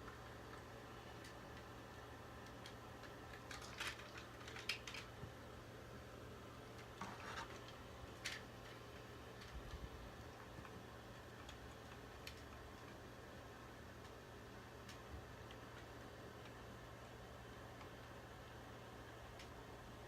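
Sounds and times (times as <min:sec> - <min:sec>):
low steady hum: 0:00.0 - 0:20.0
plastic toy parts clicking: 0:02.4 - 0:05.2.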